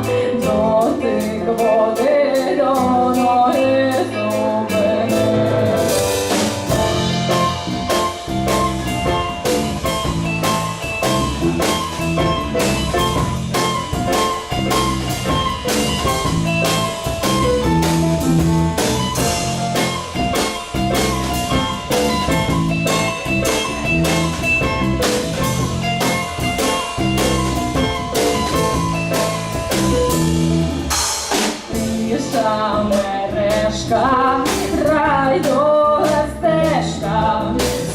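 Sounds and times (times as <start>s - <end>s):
drum kit steady beat: 0.0s - 37.9s
electric guitar playing: 2.9s - 32.8s.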